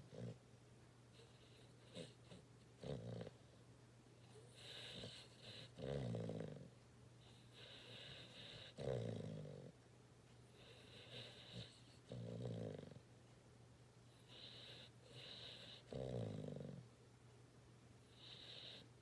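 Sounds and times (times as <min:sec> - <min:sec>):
dog snoring: 0:00.0 - 0:00.4, 0:01.1 - 0:03.4, 0:04.2 - 0:09.8, 0:10.5 - 0:13.1, 0:14.1 - 0:16.9, 0:18.1 - 0:19.0.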